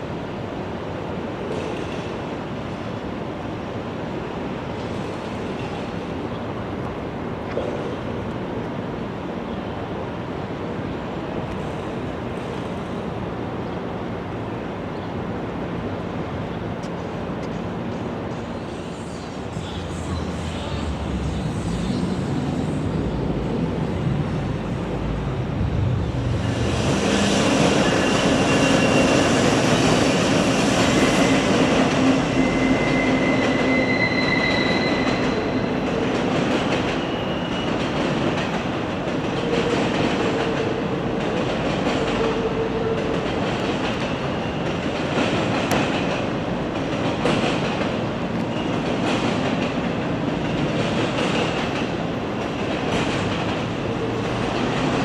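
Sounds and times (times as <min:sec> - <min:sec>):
freight train passing: 0:00.0 - 0:55.0
high wheel squeals: 0:27.4 - 0:29.6, 0:31.0 - 0:35.9, 0:36.9 - 0:37.9.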